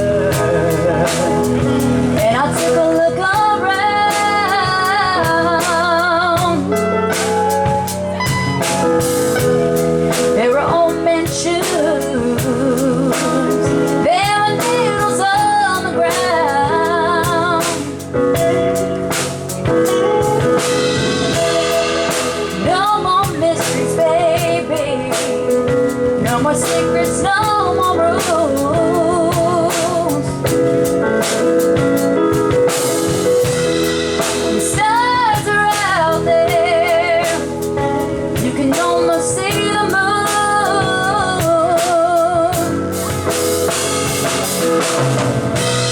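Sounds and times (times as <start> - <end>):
lead singer singing with vibrato: 0.0 - 7.1, 21.1 - 30.8
drum kit: 0.0 - 45.9
live soul band playing: 0.0 - 45.9.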